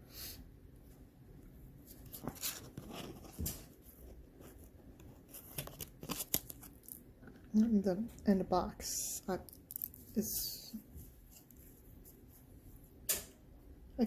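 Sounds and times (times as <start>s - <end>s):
cards and box rustling: 1.9s - 7.0s.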